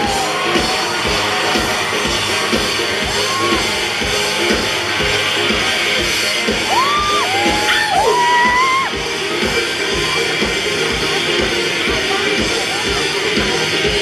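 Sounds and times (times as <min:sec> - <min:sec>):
whooping yells: 0:00.0 - 0:04.0, 0:06.6 - 0:09.0
live rock band playing: 0:00.0 - 0:14.0.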